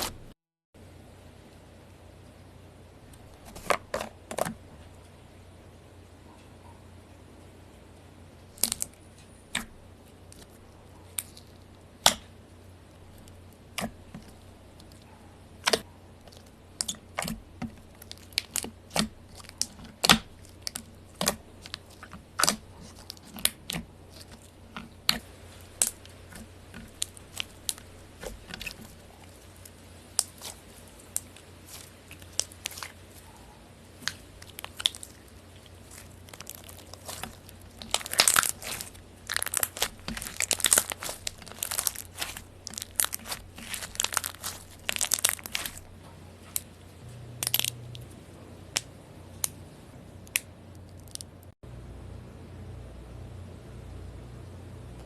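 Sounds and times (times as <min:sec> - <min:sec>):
slime popping and crackling: 0:15.6 - 0:33.0, 0:33.9 - 0:45.9, 0:47.4 - 0:47.8.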